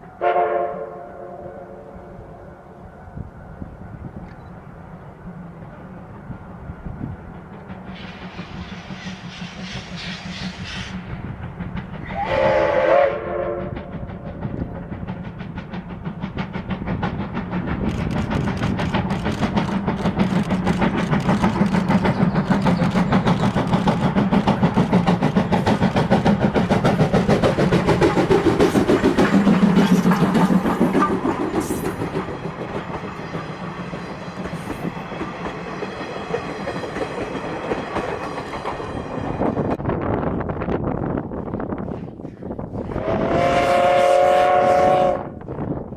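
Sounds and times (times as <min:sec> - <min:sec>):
steam locomotive whistle: 0:00.2 - 0:02.3, 0:12.0 - 0:14.1, 0:42.9 - 0:45.4
locomotive exhaust beats: 0:04.9 - 0:38.8
steam hissing: 0:05.8 - 0:39.2.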